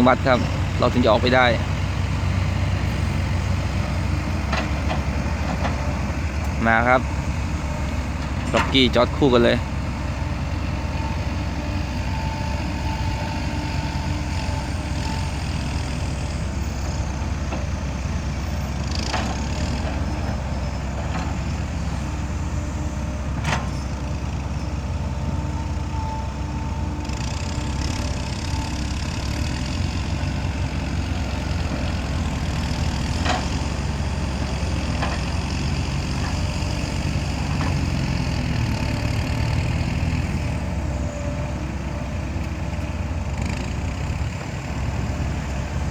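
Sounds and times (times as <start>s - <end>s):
diesel engines running at low revs: 0.0s - 45.9s.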